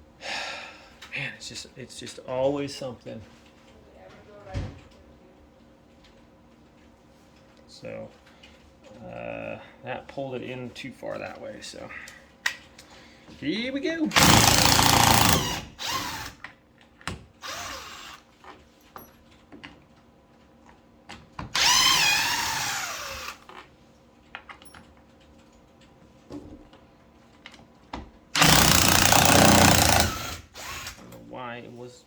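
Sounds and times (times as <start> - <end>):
cordless drill driving screws: 14.1 - 16.4, 17.4 - 18.3, 21.5 - 23.5, 28.4 - 31.0.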